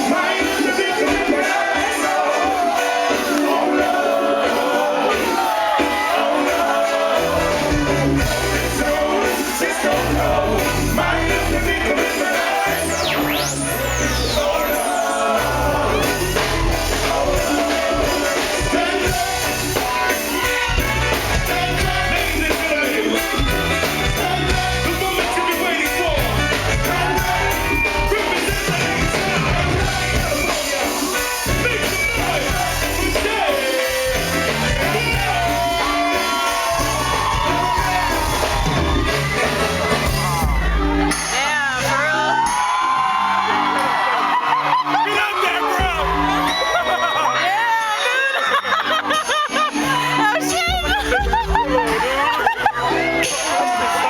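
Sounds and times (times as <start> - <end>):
live reggae band playing: 0.0 - 54.0
man singing: 8.4 - 13.4, 21.4 - 36.9.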